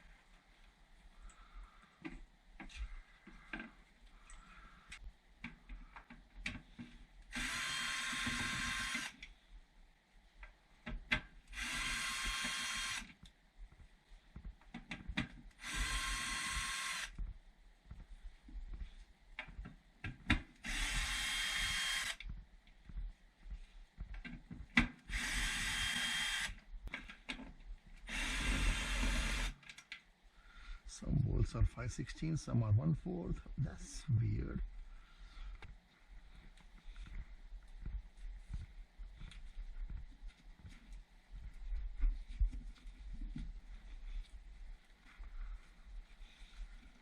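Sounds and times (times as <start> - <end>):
power drill driving screws: 7.3 - 9.2, 11.6 - 13.1, 15.6 - 17.2, 20.6 - 22.2, 25.1 - 26.6, 28.1 - 29.6.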